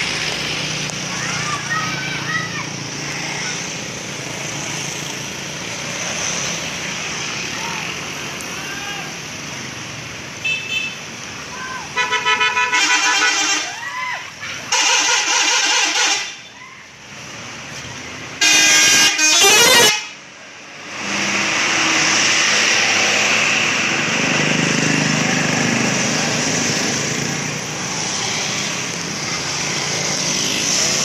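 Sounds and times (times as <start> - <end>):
bus engine and road noise: 0.0 - 31.0
multi-tone musical air horn: 12.0 - 13.8, 14.7 - 16.4, 18.4 - 20.2.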